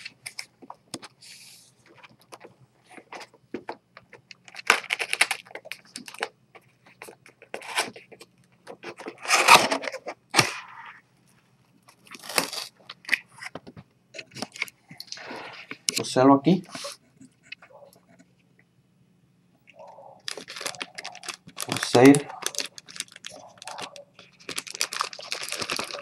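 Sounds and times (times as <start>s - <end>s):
packaging tearing and crinkling: 4.4s - 6.3s, 8.8s - 10.6s, 12.0s - 13.2s, 20.2s - 26.0s.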